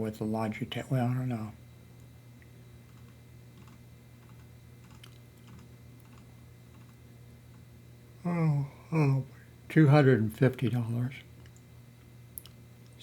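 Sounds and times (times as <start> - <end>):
steady low hum: 0.0 - 13.0
computer keyboard clicks: 2.9 - 7.0.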